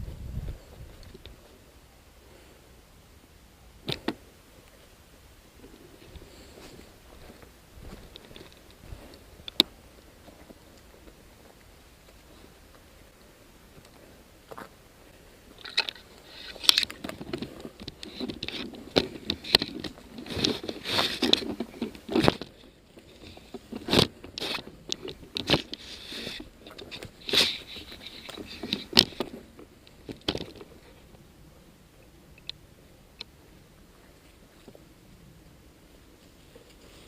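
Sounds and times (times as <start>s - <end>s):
footsteps through dry undergrowth: 5.6s - 30.9s
sharp cracks of twigs: 15.6s - 22.6s.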